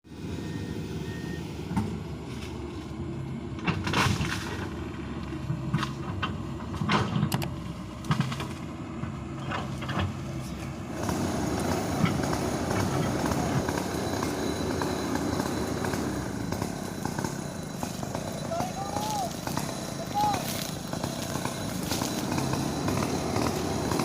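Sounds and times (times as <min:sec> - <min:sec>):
excavator diesel engine running: 0:00.0 - 0:24.0
sharp knocks and cracks: 0:05.7 - 0:08.6.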